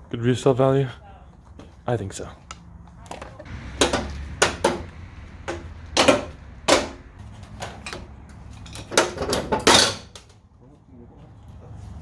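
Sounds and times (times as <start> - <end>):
metal knocks and clanks: 3.1 - 10.4.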